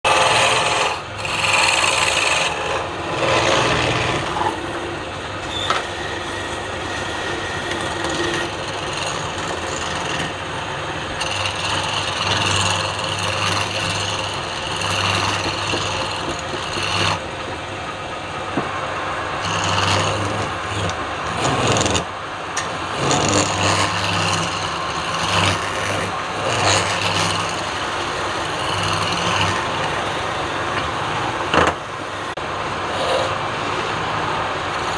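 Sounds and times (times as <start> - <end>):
tool rasping on wood: 0.0 - 4.5, 5.9 - 10.4, 11.0 - 17.2, 19.4 - 30.4, 32.9 - 33.4, 34.6 - 34.9.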